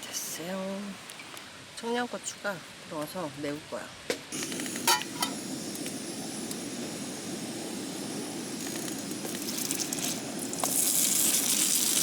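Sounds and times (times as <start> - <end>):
food frying sizzle: 4.3 - 12.0
gas burner roaring: 4.3 - 12.0.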